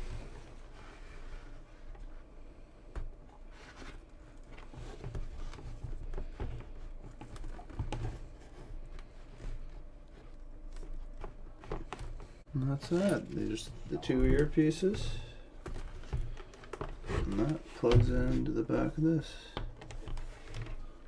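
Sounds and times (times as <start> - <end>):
hands rustling and rubbing: 3.3 - 19.3.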